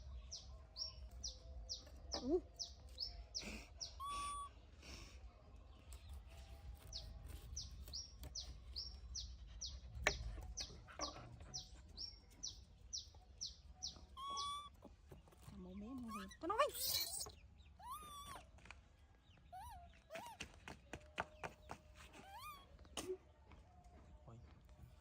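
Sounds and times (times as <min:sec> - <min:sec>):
bird chirping: 0:00.0 - 0:04.8, 0:05.7 - 0:18.6.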